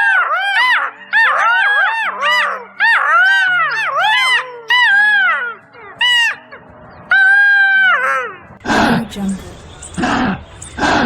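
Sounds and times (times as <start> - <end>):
background music: 0.0 - 11.0
high animal calls: 8.6 - 11.0.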